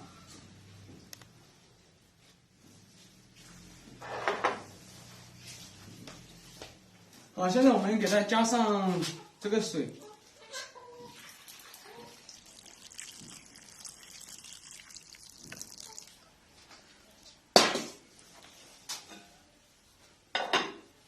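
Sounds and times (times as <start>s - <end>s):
water pouring into a pot: 11.1s - 16.2s.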